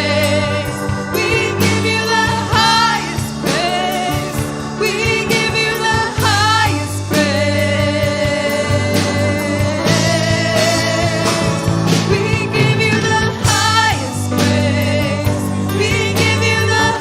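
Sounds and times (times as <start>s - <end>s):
sustained instrumental chords: 0.0s - 17.0s.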